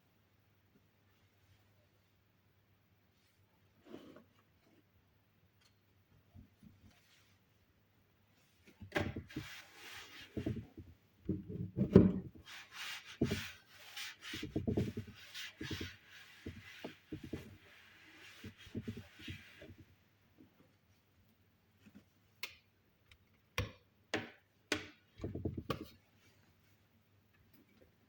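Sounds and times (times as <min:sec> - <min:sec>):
scraping or rubbing: 0:09.2 - 0:19.9.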